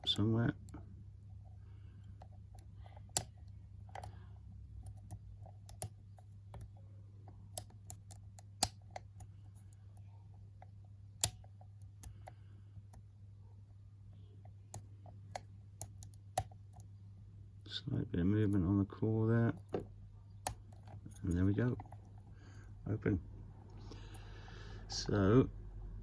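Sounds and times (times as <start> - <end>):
steady low hum: 0.0 - 26.0
lock pick clicking on pins: 2.0 - 13.1, 14.4 - 16.9, 19.5 - 22.4.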